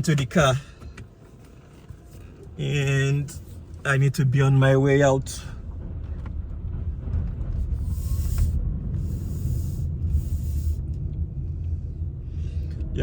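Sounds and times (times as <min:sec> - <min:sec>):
car interior rumble: 0:00.0 - 0:13.0.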